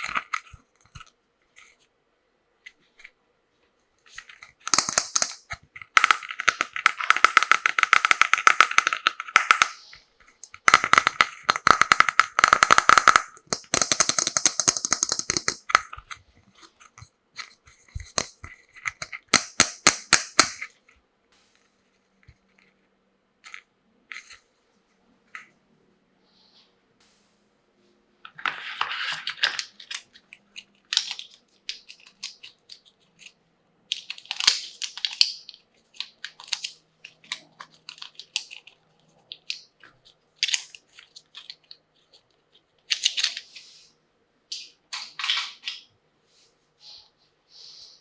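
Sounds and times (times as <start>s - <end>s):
plastic toy pieces clicking: 4.1s - 9.8s, 10.4s - 16.2s, 17.9s - 20.7s, 29.1s - 41.7s, 42.9s - 43.4s.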